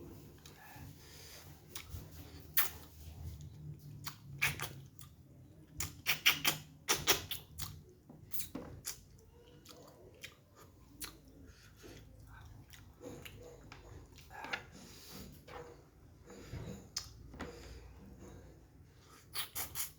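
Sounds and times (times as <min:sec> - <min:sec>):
person chewing: 0:00.2 - 0:14.8, 0:16.9 - 0:17.2
wet lip smacks: 0:02.5 - 0:02.9, 0:04.0 - 0:05.1, 0:05.8 - 0:09.0, 0:19.3 - 0:19.9
mouth clicks: 0:05.8 - 0:09.0, 0:19.3 - 0:19.9.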